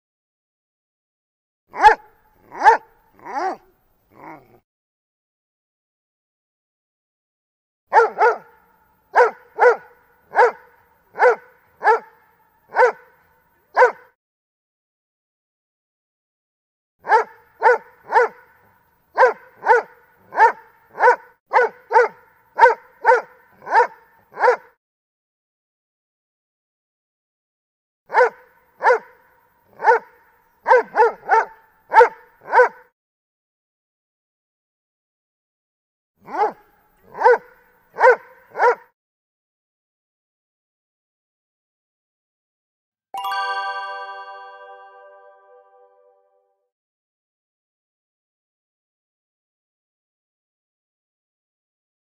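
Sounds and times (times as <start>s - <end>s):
dog barking: 1.7s - 4.6s, 7.9s - 14.2s, 17.0s - 24.8s, 28.1s - 32.9s, 36.2s - 39.0s.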